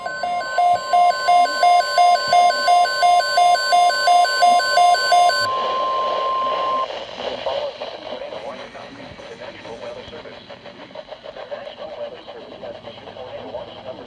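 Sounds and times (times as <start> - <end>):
steady alert tone: 0.0 - 6.8
two-pitch alarm beeping: 0.0 - 6.9
radio hiss: 6.4 - 14.0.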